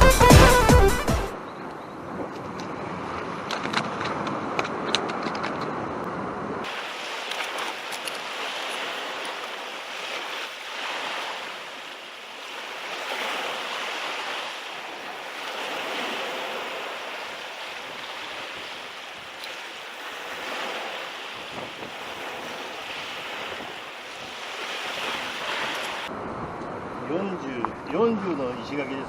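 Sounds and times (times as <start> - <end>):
sea waves washing in: 1.3 - 27.3
wind buffeting microphone: 20.0 - 28.1.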